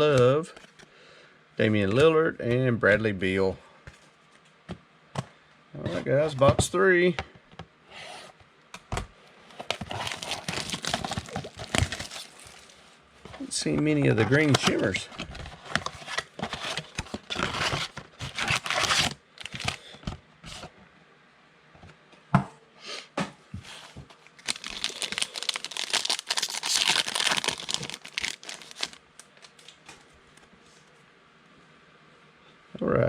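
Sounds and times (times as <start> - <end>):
plastic wrappers crinkling and tearing: 9.6 - 12.9, 14.3 - 20.6, 24.2 - 29.9.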